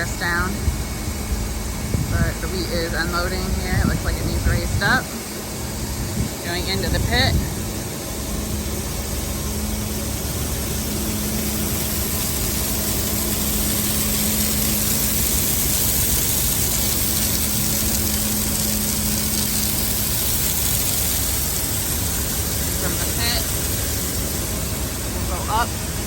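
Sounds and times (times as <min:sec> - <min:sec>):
grain-handling machinery hum: 0:00.0 - 0:26.0
truck engine running: 0:00.0 - 0:26.0
hiss of grain unloading: 0:09.0 - 0:26.0.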